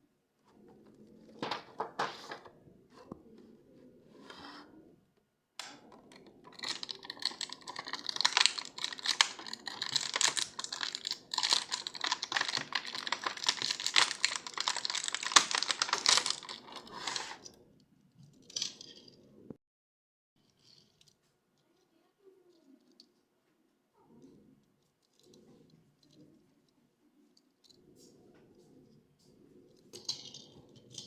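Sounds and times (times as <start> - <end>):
toy packaging crackling: 5.7 - 17.5.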